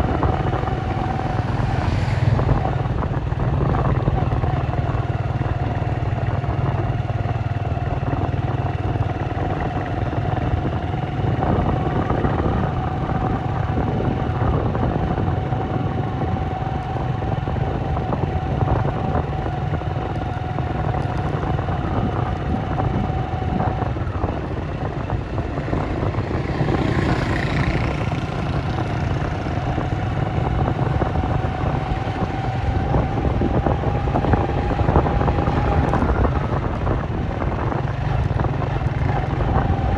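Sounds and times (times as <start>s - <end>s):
vehicle passing close by: 0.0s - 4.5s, 25.0s - 37.7s
traffic rumble with whine: 0.0s - 39.9s.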